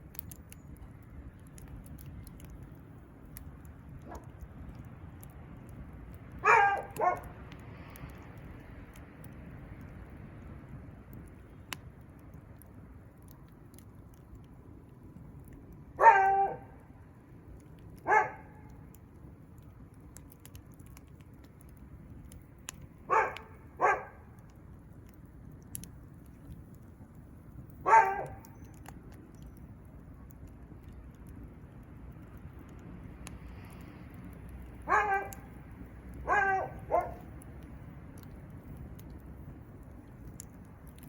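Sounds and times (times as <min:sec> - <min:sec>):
crackling wood fire: 0:00.0 - 0:41.0
dog barking: 0:06.4 - 0:07.3, 0:16.0 - 0:16.7, 0:18.0 - 0:18.6, 0:23.1 - 0:24.2, 0:27.8 - 0:28.5, 0:34.9 - 0:35.5, 0:36.2 - 0:37.3.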